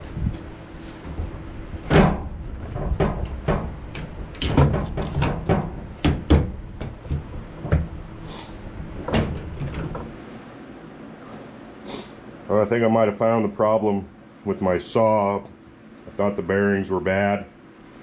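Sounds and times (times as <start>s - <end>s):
knocks and clunks: 1.0s - 8.1s, 8.9s - 10.2s.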